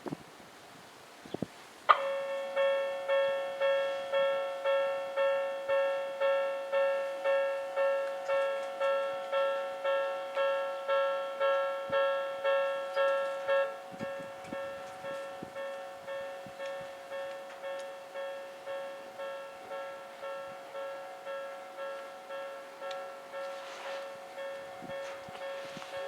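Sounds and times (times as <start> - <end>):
level crossing warning bell: 1.9 - 26.0.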